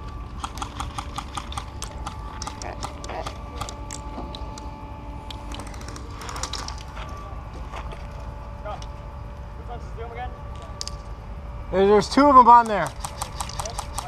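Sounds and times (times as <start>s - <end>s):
steady hum: 0.0s - 14.0s
airsoft gunfire clicks and pops: 0.4s - 4.6s, 12.6s - 14.0s.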